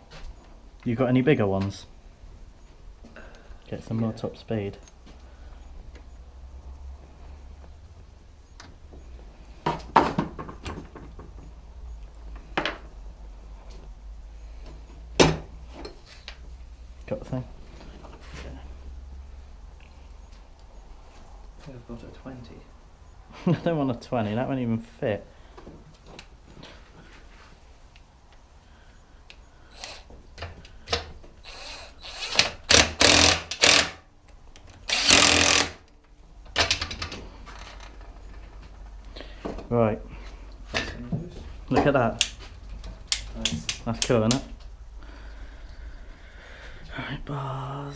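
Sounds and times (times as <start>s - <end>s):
power tool bursts: 29.7s - 30.1s, 31.4s - 34.0s, 34.8s - 35.8s.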